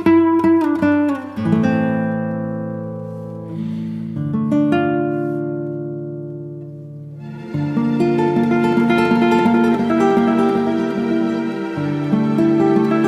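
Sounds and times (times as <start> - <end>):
acoustic guitar music: 0.0 - 13.0.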